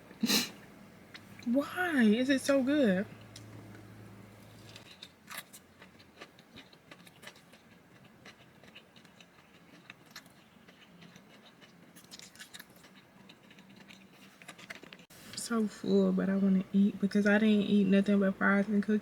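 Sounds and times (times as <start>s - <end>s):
person chewing a sandwich: 4.4s - 15.1s.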